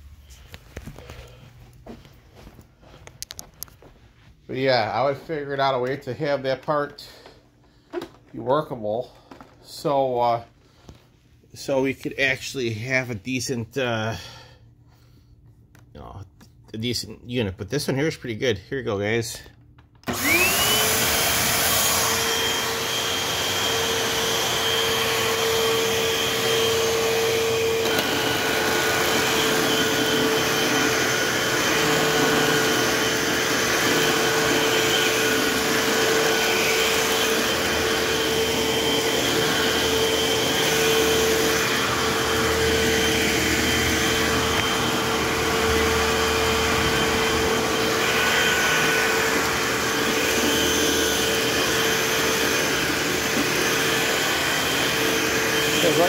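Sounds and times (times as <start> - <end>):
vacuum cleaner motor whining: 20.0 - 56.0.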